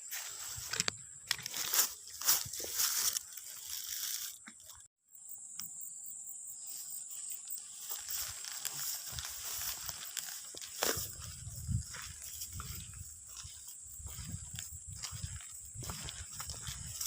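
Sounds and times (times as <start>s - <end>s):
rustling handling noise: 0.0s - 4.8s, 7.7s - 14.2s.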